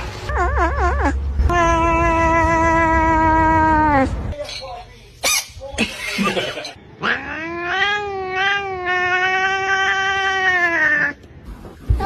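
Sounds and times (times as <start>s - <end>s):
cat yowling: 0.3s - 4.1s, 7.0s - 11.2s.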